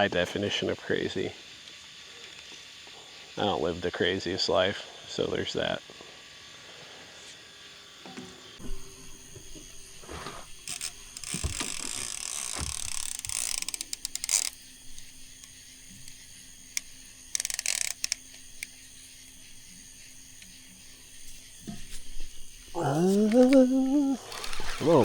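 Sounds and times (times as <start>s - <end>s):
fishing reel clicker ratcheting: 10.6s - 14.6s, 16.7s - 18.7s.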